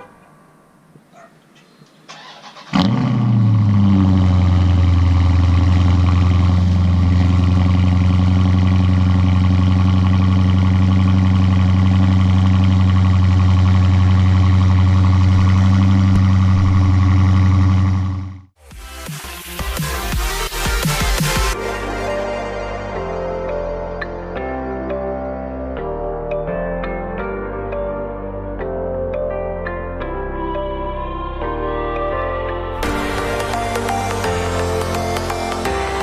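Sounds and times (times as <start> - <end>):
car engine starting and idling: 2.0 - 18.6, 32.8 - 36.0.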